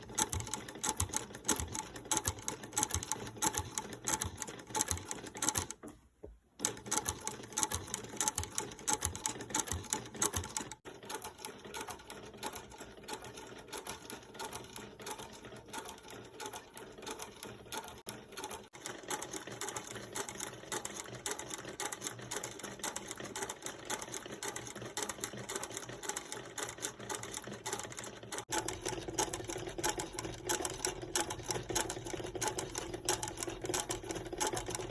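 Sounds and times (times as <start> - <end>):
sewing machine stitching: 0.0 - 6.0, 6.6 - 34.9.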